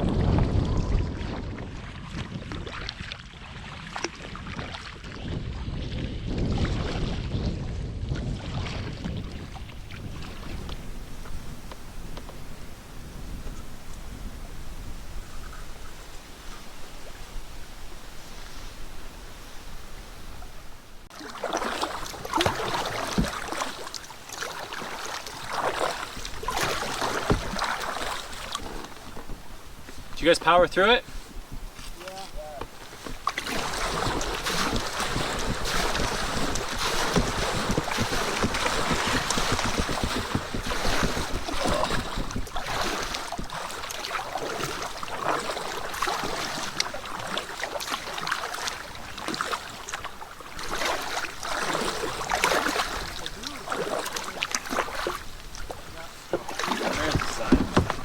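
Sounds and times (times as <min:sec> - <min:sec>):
wind buffeting microphone: 0:00.0 - 0:21.1, 0:25.4 - 0:47.4, 0:50.1 - 0:58.0
water splashing around boat: 0:00.0 - 0:58.0
dull knocks: 0:26.6 - 0:27.8, 0:34.1 - 0:42.7, 0:56.3 - 0:58.0.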